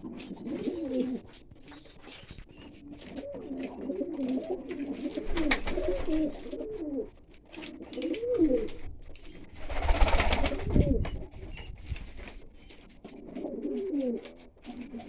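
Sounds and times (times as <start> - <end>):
pigeons cooing: 0.0 - 11.9, 12.6 - 15.0
rushing rustling noise: 8.7 - 12.5.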